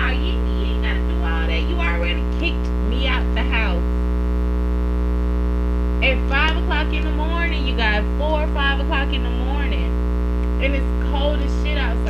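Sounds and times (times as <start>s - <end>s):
person talking: 0.0s - 4.0s, 6.0s - 9.9s, 10.6s - 12.0s
electrical mains hum: 0.0s - 12.0s.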